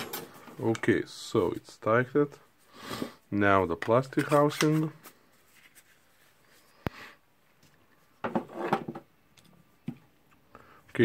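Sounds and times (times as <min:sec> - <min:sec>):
rubbing scrapes of small parts: 0:04.1 - 0:06.8.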